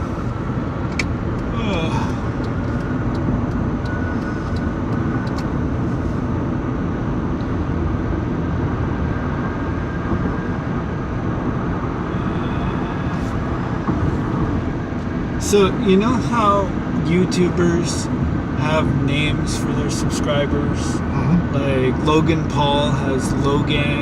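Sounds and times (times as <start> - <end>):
car road and engine noise: 0.0 - 24.0.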